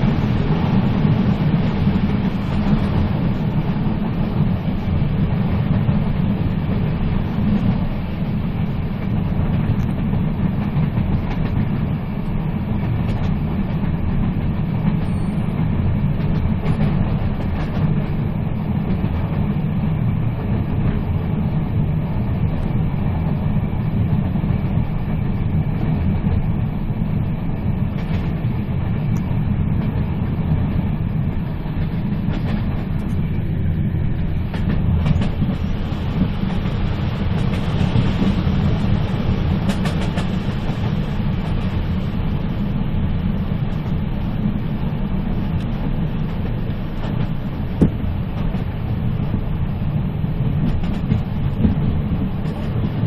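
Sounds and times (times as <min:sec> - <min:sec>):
train rumbling: 0:00.0 - 0:53.0
wheels clicking over rails: 0:34.4 - 0:42.7.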